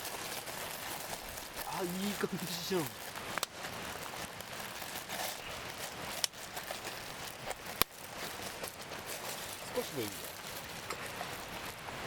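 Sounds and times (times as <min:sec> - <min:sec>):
campfire crackling and hissing: 0:00.0 - 0:12.0
sharp pops of fire: 0:01.5 - 0:09.1.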